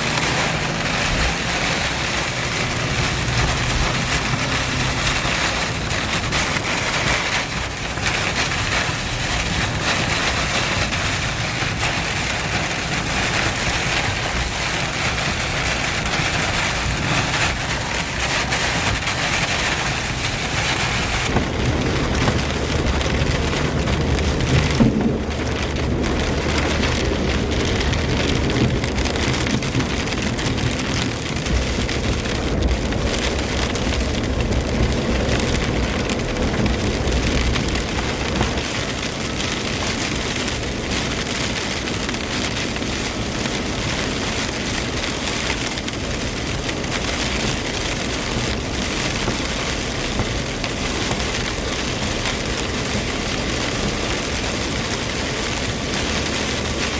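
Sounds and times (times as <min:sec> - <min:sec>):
heavy rain falling: 0:00.0 - 0:56.9.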